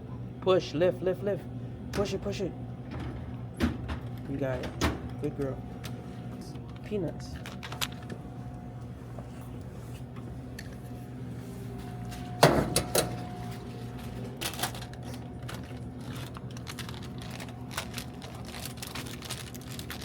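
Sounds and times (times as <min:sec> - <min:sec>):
steady machine hum: 0:00.0 - 0:20.0
snack packs clicking and knocking: 0:14.4 - 0:20.0.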